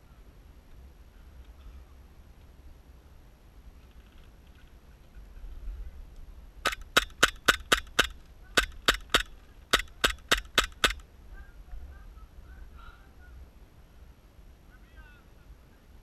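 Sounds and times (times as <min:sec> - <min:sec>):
airsoft gun shots: 0:06.6 - 0:11.0.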